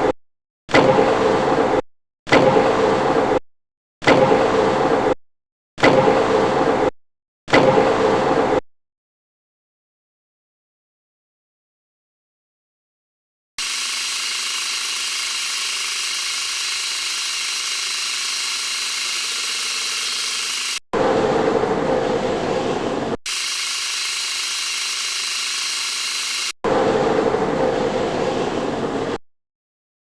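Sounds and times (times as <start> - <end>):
metal lathe whirring: 13.6 - 20.8, 23.3 - 26.6
rough machining sound: 13.6 - 21.2, 23.1 - 27.6.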